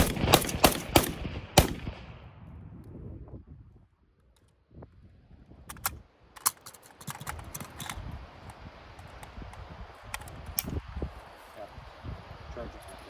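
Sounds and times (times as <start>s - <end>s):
sharp clicks and knocks: 5.7s - 8.0s.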